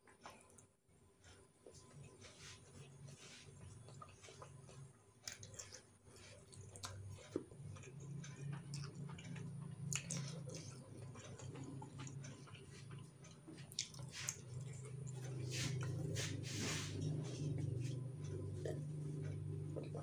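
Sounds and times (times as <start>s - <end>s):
low steady hum: 0.0s - 20.0s
person chewing with lip smacks: 3.6s - 16.4s.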